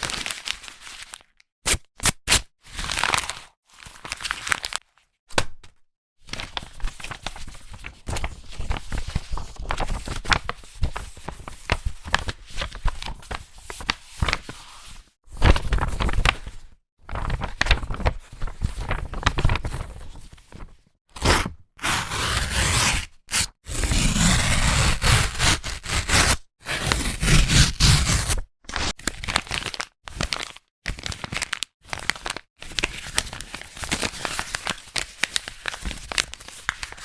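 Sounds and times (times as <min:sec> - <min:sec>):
paper crinkling and crumpling: 0:03.0 - 0:05.1, 0:06.3 - 0:20.8, 0:26.8 - 0:37.0
paper tearing: 0:21.2 - 0:29.0.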